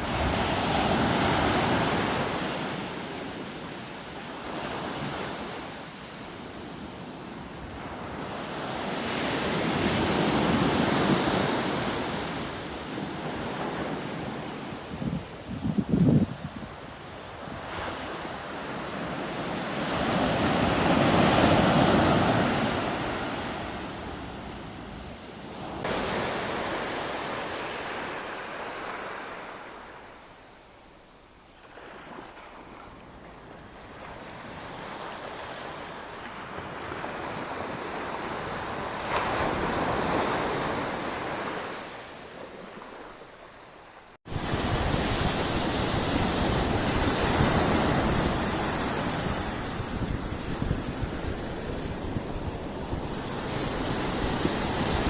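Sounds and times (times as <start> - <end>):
sea surf breaking on beach: 0.0 - 5.8, 17.2 - 30.2, 36.6 - 55.0.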